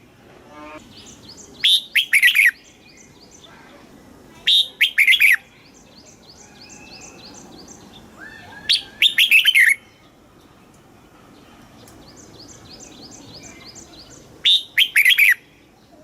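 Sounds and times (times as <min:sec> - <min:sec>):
faint bird chirps: 0:00.7 - 0:10.2, 0:11.3 - 0:16.0
bird singing whistled phrases: 0:01.0 - 0:03.3, 0:04.5 - 0:10.0, 0:12.8 - 0:15.5.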